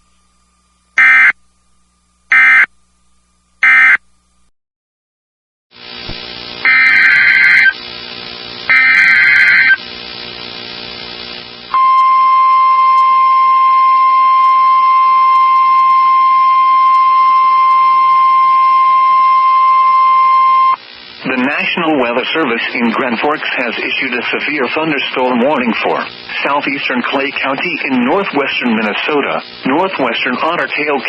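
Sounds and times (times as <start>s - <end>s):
single-pitch warning alarm tone: 1.0s - 1.4s, 2.3s - 2.7s, 3.6s - 4.0s, 6.7s - 7.8s, 8.7s - 9.8s
warbling digital data bursts: 6.7s - 7.8s, 8.7s - 9.8s.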